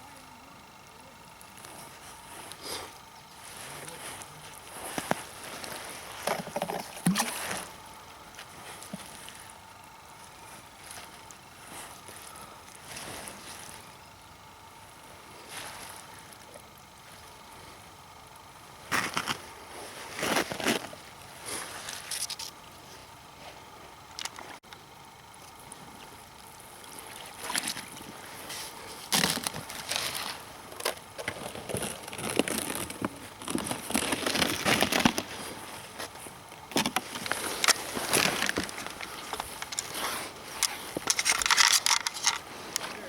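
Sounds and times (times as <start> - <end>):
crunching and rustling handling: 0.6 - 43.0
water sloshing and splashing: 4.5 - 9.5, 25.4 - 35.9.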